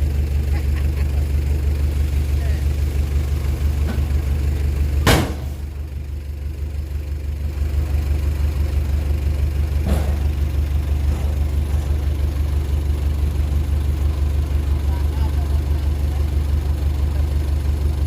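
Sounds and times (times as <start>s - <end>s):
heavy diesel engine rumbling: 0.0s - 18.0s
sharp knock: 5.1s - 5.5s.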